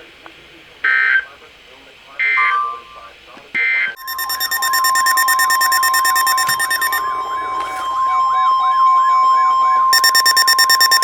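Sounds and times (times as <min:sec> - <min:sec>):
steady alarm tone: 0:03.6 - 0:11.0
rapid electronic beeping: 0:03.9 - 0:11.0
electronic siren warbling: 0:04.0 - 0:11.0.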